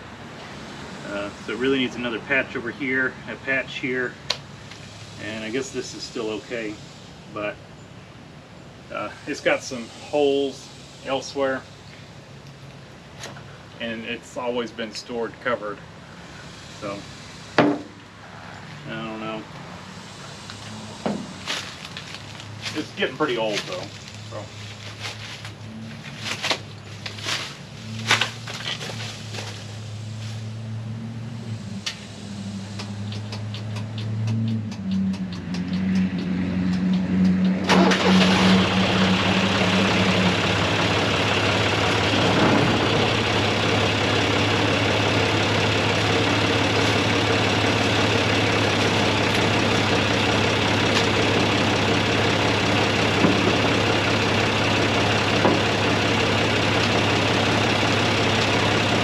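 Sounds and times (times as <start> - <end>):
diesel tractor engine starting: 34.6 - 59.0.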